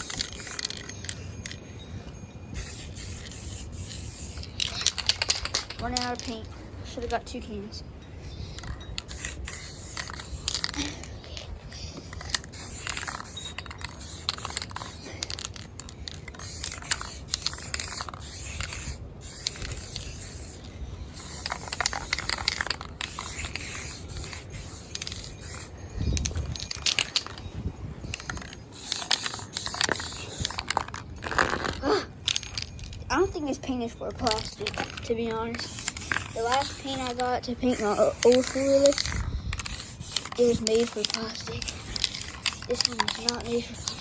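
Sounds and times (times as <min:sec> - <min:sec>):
spray can hissing: 0:00.0 - 0:00.9, 0:02.5 - 0:05.4, 0:08.5 - 0:10.9, 0:12.0 - 0:15.1, 0:16.3 - 0:25.8, 0:28.2 - 0:30.8, 0:34.2 - 0:44.0
spray can clicks and rattles: 0:00.0 - 0:01.6, 0:02.5 - 0:06.4, 0:08.5 - 0:27.4, 0:28.1 - 0:33.0, 0:34.2 - 0:44.0.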